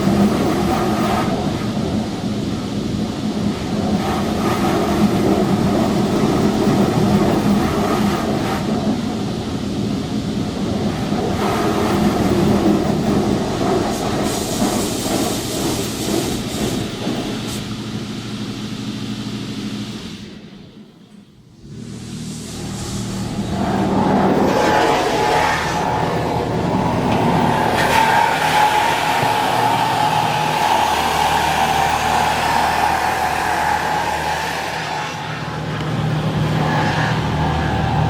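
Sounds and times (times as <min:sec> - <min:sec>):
low hum: 0:18.6 - 0:38.0
car wash machine noise: 0:21.6 - 0:38.0.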